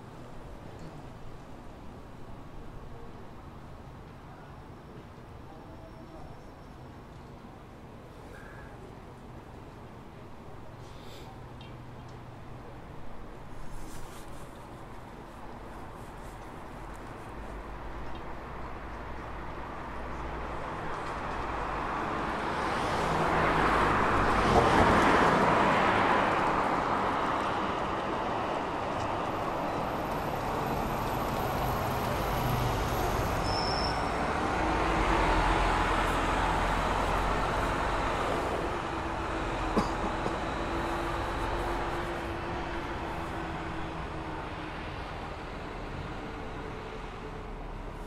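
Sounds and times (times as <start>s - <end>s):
steady traffic noise: 0.0s - 48.0s
vehicle passing close by: 34.0s - 44.1s.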